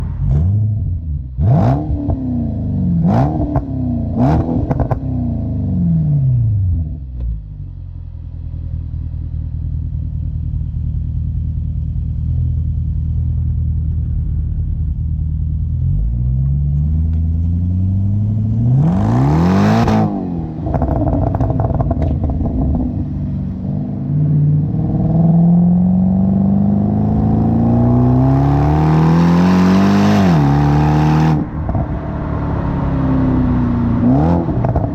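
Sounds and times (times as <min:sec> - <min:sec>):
car engine revving: 0:00.0 - 0:07.1, 0:11.8 - 0:34.9
exhaust crackles: 0:09.2 - 0:26.4.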